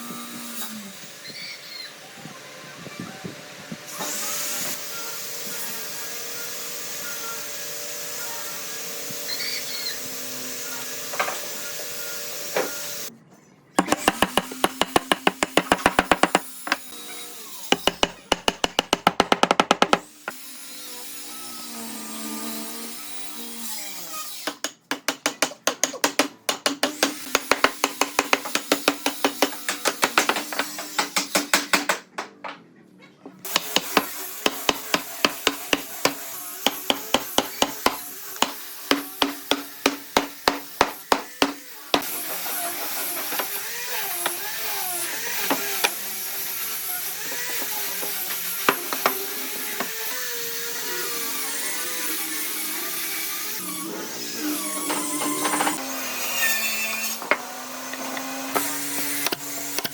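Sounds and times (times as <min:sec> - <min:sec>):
rapid knocks on wood: 0:17.8 - 0:20.0.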